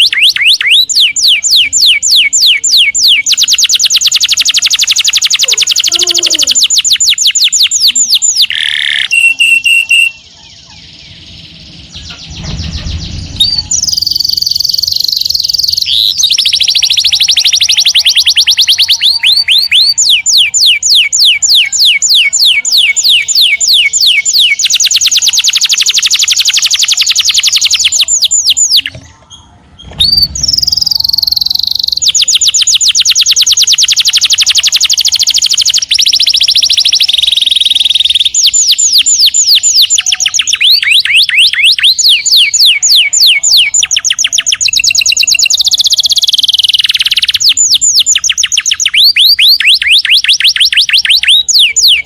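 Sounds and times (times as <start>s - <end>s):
canary singing in fast trills: 0.0s - 52.0s.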